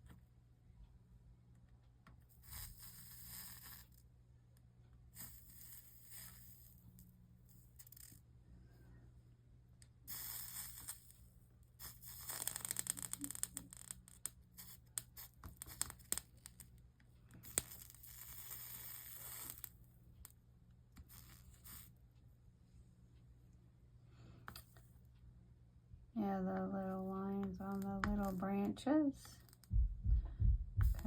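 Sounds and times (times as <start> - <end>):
soldering flux sizzling and crackling: 2.1 - 8.4, 9.8 - 22.1, 26.7 - 29.7.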